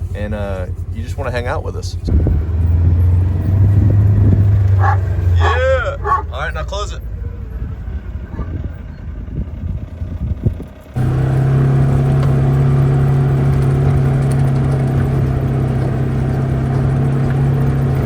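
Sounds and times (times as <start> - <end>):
tractor engine running: 0.0 - 18.0.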